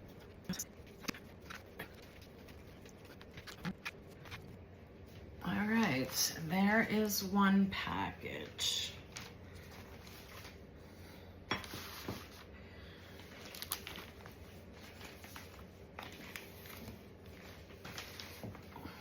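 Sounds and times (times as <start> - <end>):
plastic bags crinkling: 13.1 - 18.7.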